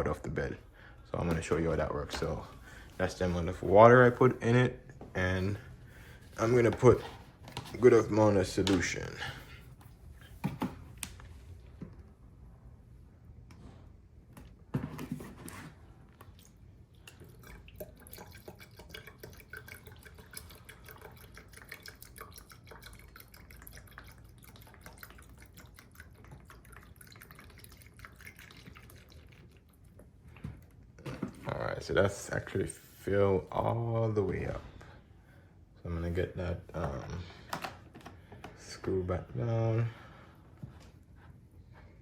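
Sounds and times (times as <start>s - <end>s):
liquid trickling into tank: 16.2s - 30.4s.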